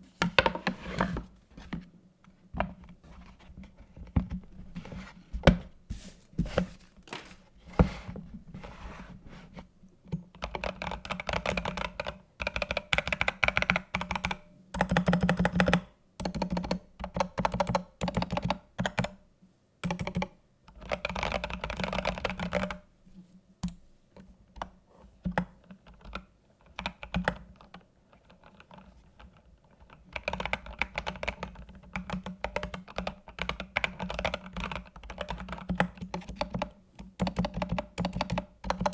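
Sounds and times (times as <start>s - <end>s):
mechanical keyboard typing: 10.4s - 19.2s, 19.8s - 22.8s, 25.3s - 38.9s.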